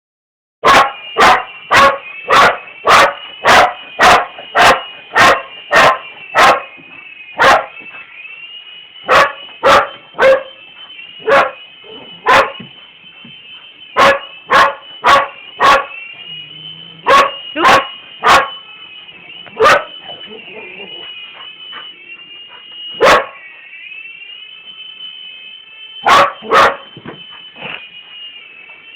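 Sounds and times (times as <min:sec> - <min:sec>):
dog barking: 0:00.6 - 0:06.7, 0:07.4 - 0:07.8, 0:09.1 - 0:10.6, 0:11.2 - 0:12.7, 0:14.0 - 0:16.0, 0:17.0 - 0:18.6, 0:19.6 - 0:21.0, 0:23.0 - 0:23.4, 0:26.0 - 0:26.9
toy helicopter whining: 0:14.3 - 0:28.9.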